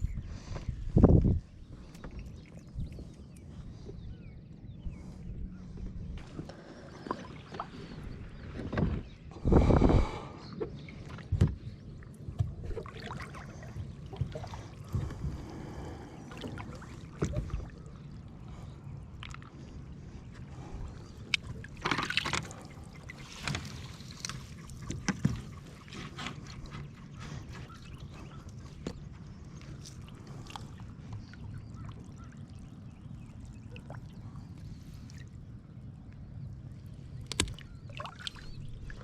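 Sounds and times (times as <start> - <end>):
water splashing: 12.6 - 18.6, 21.2 - 28.4, 37.2 - 39.0.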